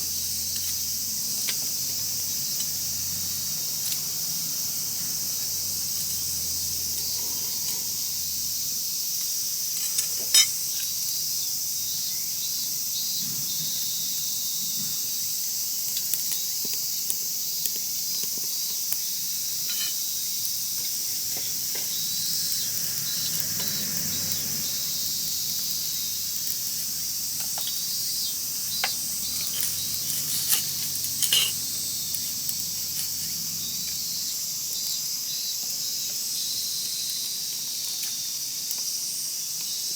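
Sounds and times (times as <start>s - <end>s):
kettle hissing: 0.0s - 11.5s, 17.6s - 35.0s
wood fire crackling: 0.0s - 11.5s, 15.1s - 38.9s
insects chirring: 0.0s - 39.9s
fire popping: 15.8s - 35.0s.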